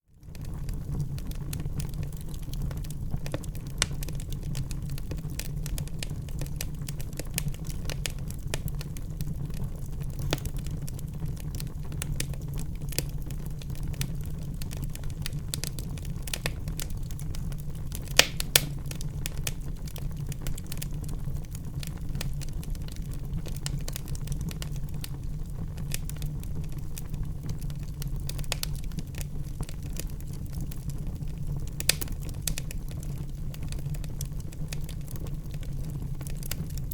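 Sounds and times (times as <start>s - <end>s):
wood fire crackling: 0.1s - 36.9s
loud fire pops: 0.4s - 36.9s.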